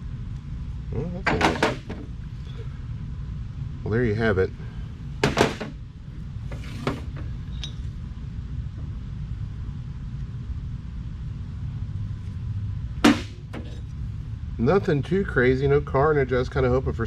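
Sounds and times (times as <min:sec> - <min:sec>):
sharp knock: 0:13.0 - 0:13.8.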